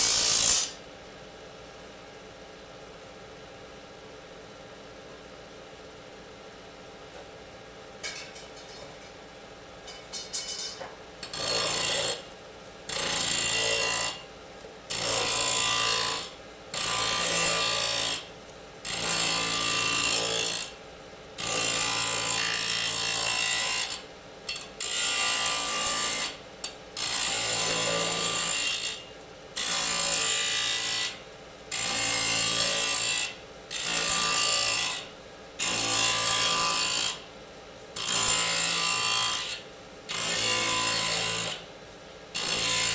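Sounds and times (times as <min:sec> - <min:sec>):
disc saw cutting metal: 0:00.0 - 0:00.8, 0:09.9 - 0:12.3, 0:12.9 - 0:14.3, 0:14.9 - 0:20.7, 0:21.4 - 0:26.4, 0:27.0 - 0:29.0, 0:29.6 - 0:37.2, 0:38.0 - 0:41.6, 0:42.4 - 0:42.9.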